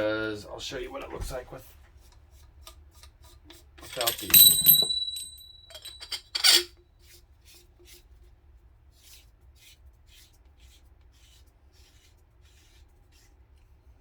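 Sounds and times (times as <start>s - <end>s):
faint metal threads scraping: 1.5s - 8.2s
metal parts clicking: 3.8s - 6.7s
sharp metal clink: 3.9s - 6.7s.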